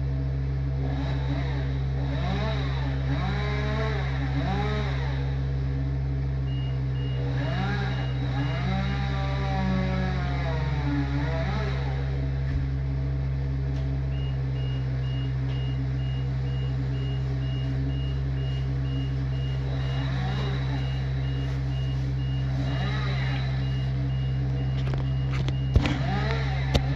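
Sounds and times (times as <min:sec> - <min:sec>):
heavy engine running: 0:00.0 - 0:26.9
reversing alarm beeping: 0:06.4 - 0:10.7, 0:14.0 - 0:26.9.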